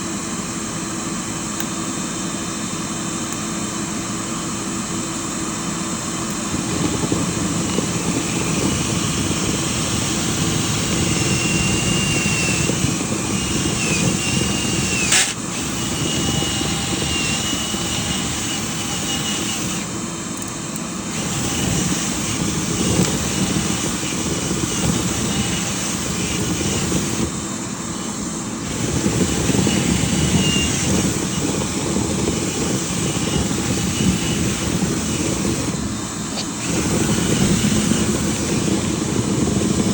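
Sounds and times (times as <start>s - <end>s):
faint wavering high whine: 6.4s - 39.9s
sharp click: 15.1s - 15.4s.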